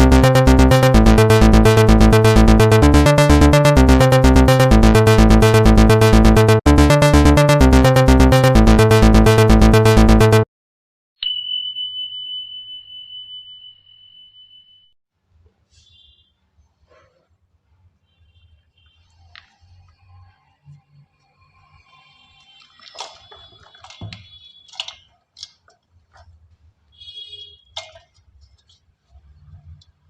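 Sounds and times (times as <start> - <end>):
electronic music with steady beat: 0.0 - 10.5
bright ding: 11.2 - 14.9.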